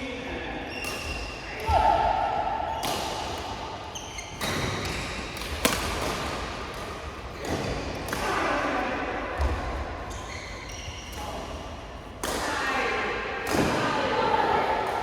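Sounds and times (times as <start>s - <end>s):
rackets hitting shuttlecock: 4.3s - 8.4s.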